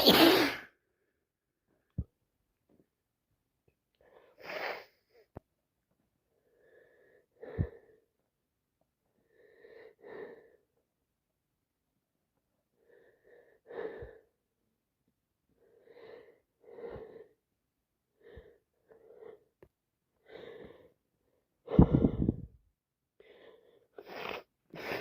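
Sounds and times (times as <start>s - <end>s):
person sniffing congested nose: 0.0s - 0.7s, 4.4s - 5.0s, 24.0s - 25.0s.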